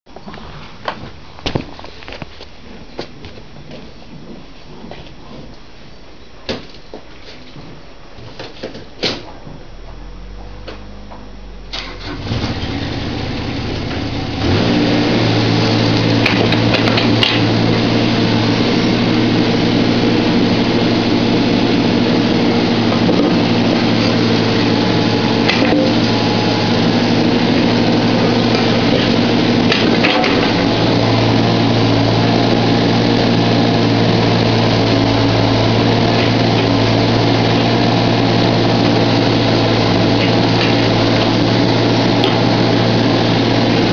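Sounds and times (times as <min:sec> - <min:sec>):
diesel engine starting and running: 0:09.4 - 0:43.9.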